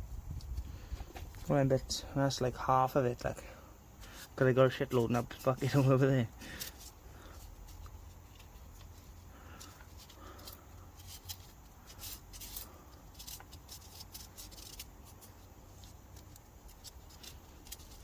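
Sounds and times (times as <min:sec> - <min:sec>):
low steady hum: 0:00.0 - 0:18.0
small metal parts clicking: 0:06.4 - 0:18.0.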